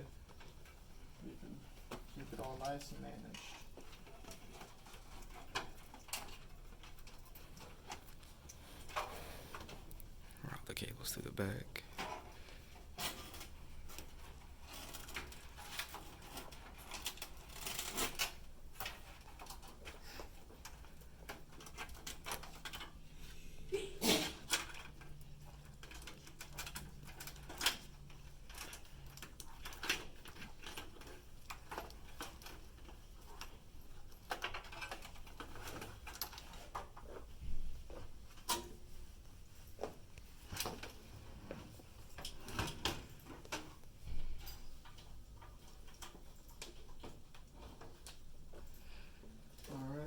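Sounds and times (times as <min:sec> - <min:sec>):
cables clicking and rustling: 0:00.0 - 0:50.0.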